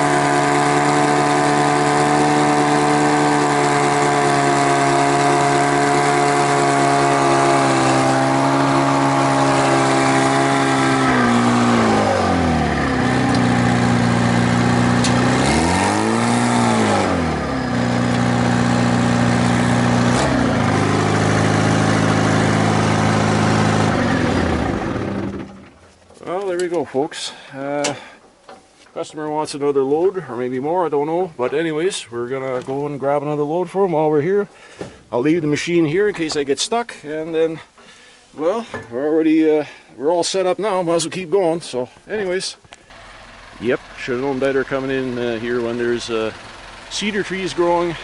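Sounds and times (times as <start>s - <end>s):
heavy machine engine revving: 0.0s - 25.8s, 42.9s - 48.0s.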